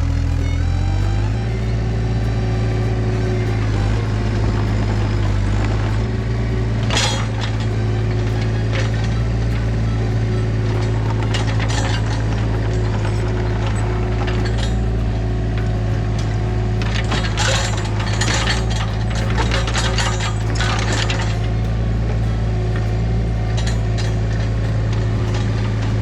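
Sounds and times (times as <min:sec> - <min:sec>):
earth-moving machine engine: 0:00.0 - 0:26.0
sharp metal clank: 0:06.8 - 0:07.8.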